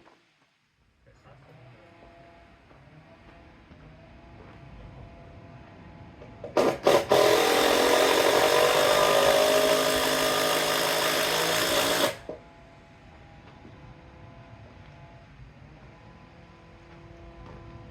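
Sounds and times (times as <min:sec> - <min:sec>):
electric power tool running: 0:06.4 - 0:12.4.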